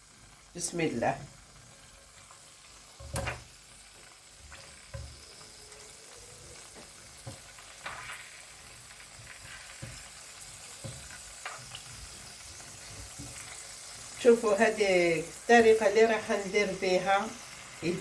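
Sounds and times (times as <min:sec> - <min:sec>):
wings sizzling in hot oil: 0:00.0 - 0:18.0
knocks in frying pan: 0:03.0 - 0:03.5.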